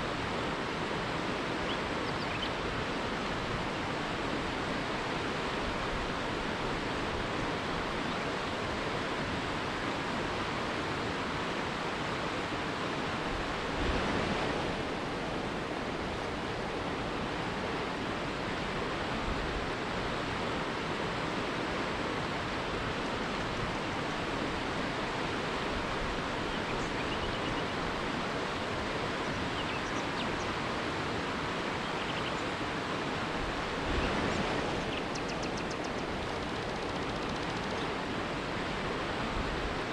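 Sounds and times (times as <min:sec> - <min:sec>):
faint bird chirps: 0:01.7 - 0:02.6, 0:26.5 - 0:27.7, 0:29.3 - 0:30.5, 0:31.8 - 0:32.5, 0:34.8 - 0:37.9
water rushing over rocks: 0:27.6 - 0:39.9.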